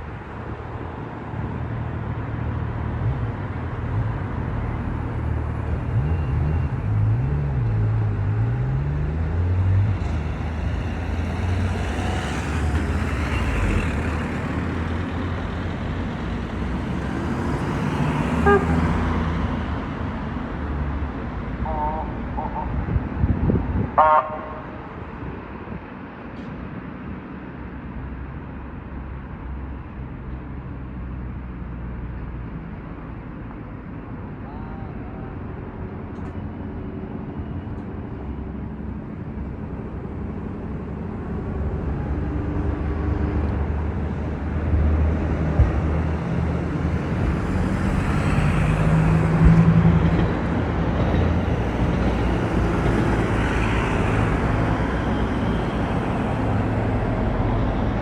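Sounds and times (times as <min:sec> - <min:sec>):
vehicle engine humming: 0:05.8 - 0:19.2, 0:45.1 - 0:58.0.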